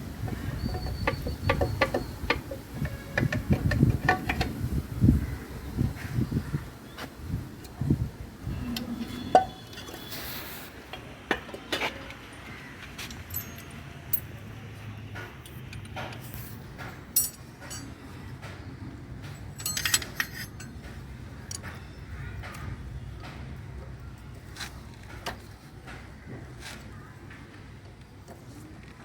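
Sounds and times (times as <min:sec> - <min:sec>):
tools and metal parts clinking: 0:00.2 - 0:04.6, 0:12.8 - 0:18.2, 0:19.2 - 0:21.8.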